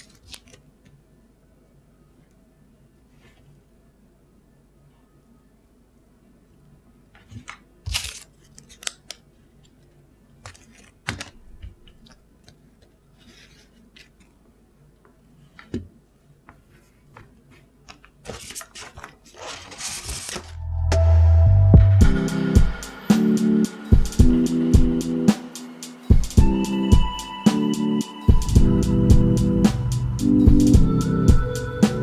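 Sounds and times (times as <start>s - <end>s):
packaging rustling: 0.0s - 0.6s, 7.4s - 9.2s, 10.4s - 12.2s, 17.9s - 20.6s.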